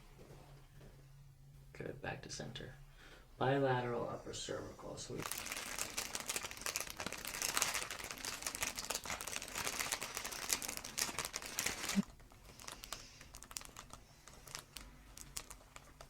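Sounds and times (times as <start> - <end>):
crinkly rustling from handling: 5.1 - 16.0.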